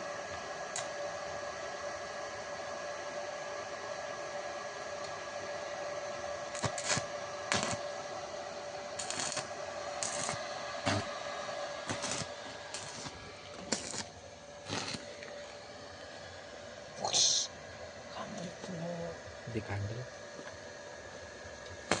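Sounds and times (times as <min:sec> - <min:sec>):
welding machine hum: 0:00.0 - 0:03.2, 0:04.3 - 0:22.0
sharp crackles: 0:06.5 - 0:07.8, 0:09.0 - 0:11.0, 0:11.9 - 0:15.1.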